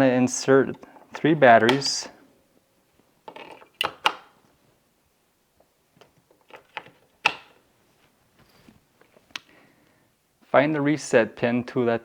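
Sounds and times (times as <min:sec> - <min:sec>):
batteries clicking into plastic holder: 0:03.3 - 0:04.3.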